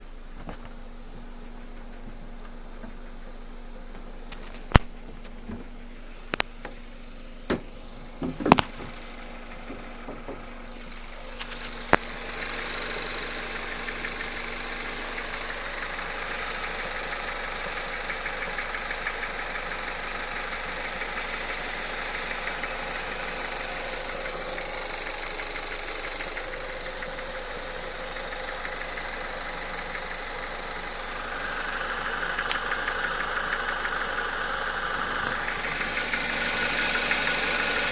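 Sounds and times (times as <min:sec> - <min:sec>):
car engine idling with knock: 0:00.3 - 0:37.9.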